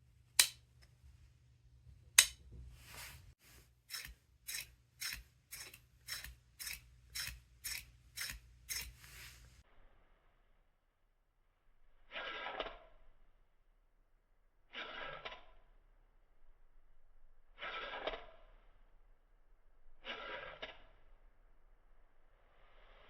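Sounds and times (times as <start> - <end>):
plastic pieces sliding: 2.8 - 9.6.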